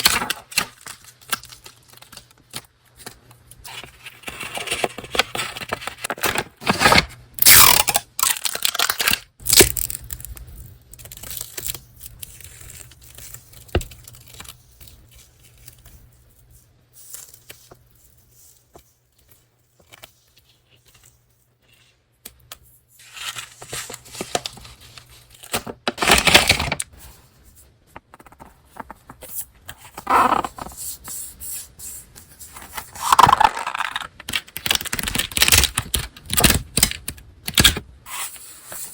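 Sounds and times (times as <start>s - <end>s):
paper ripping and rustling: 23.0s - 26.8s.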